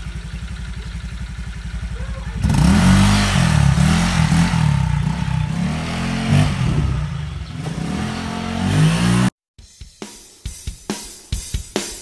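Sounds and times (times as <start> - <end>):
scooter engine revving: 0.0 - 9.4.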